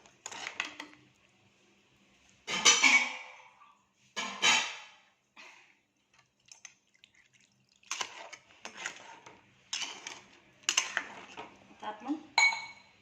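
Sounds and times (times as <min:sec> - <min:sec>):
utensil stirring and knocking in pot: 0:00.0 - 0:01.1, 0:07.8 - 0:11.8
liquid sloshing: 0:06.2 - 0:11.5.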